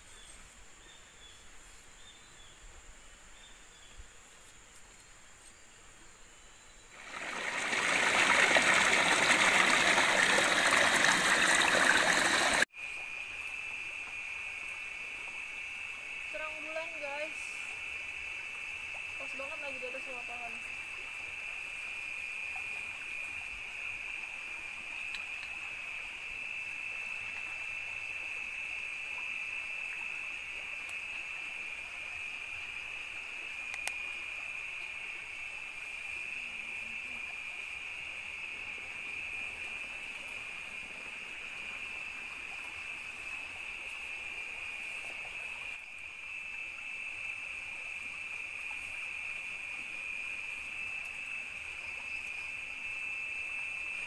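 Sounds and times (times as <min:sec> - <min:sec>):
insect chorus drone: 0:00.0 - 0:54.0.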